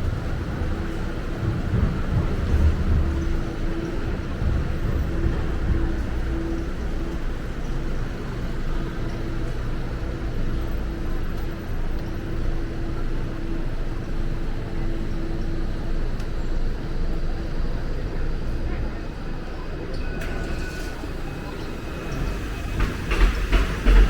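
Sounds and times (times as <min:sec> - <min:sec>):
wind buffeting microphone: 0:00.0 - 0:08.8
street traffic: 0:00.0 - 0:24.0.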